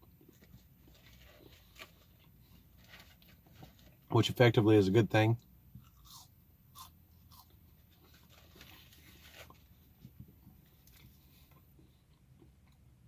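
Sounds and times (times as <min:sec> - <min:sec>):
faint chewing: 0:05.8 - 0:13.0.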